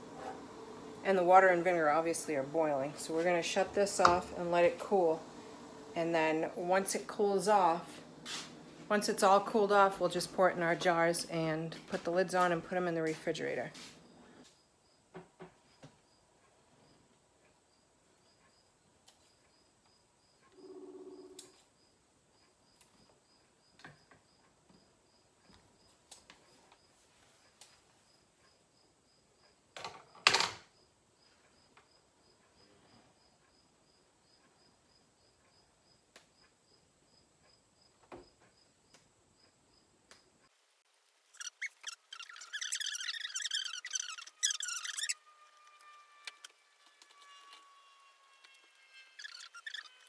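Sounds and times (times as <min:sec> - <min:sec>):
faint high chirps: 0:41.3 - 0:45.2.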